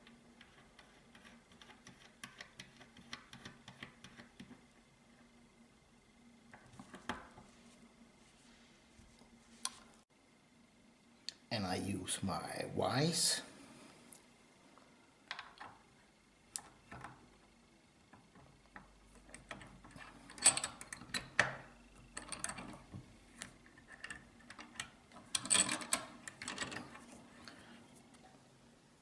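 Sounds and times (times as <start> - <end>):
small metal clicks and clattering: 18.1 - 27.1.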